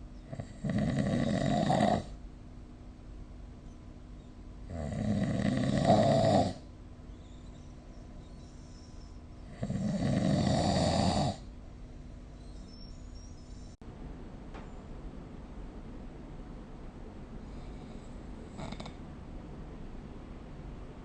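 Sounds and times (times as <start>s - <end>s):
person snoring: 0.3s - 2.2s, 4.7s - 6.6s, 9.5s - 11.5s, 17.5s - 19.0s
quiet breathing: 17.4s - 19.1s.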